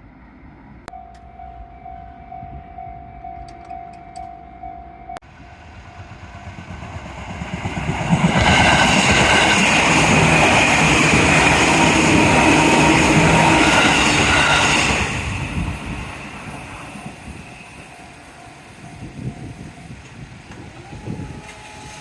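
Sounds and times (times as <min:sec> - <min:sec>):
train passing loudly: 0:00.0 - 0:22.0
level crossing warning bell: 0:00.9 - 0:06.9, 0:16.6 - 0:20.3.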